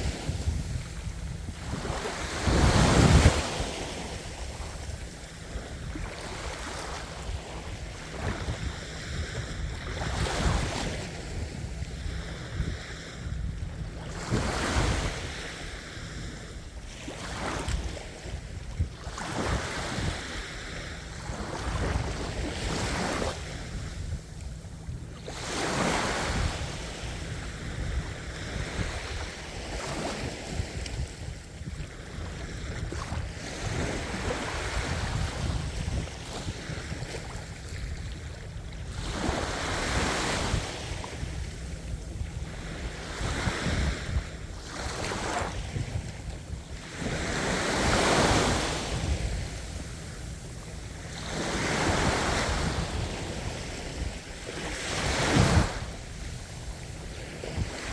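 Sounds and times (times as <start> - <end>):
sea waves breaking on shore: 0.0 - 57.9
wind rumbling on microphone: 0.0 - 57.9.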